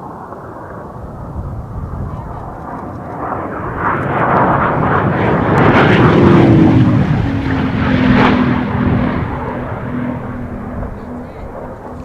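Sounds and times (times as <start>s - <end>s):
car passing at speed: 4.5s - 12.0s.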